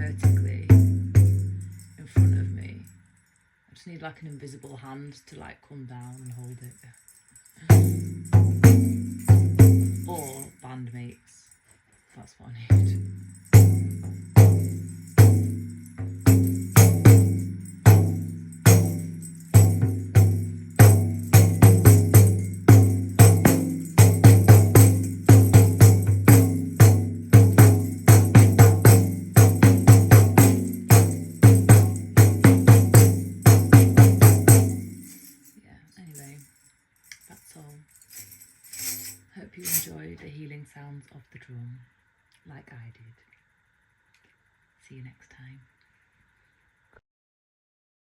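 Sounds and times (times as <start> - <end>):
hand drum strokes ringing: 0.0 - 2.4, 7.7 - 10.4, 12.9 - 35.5.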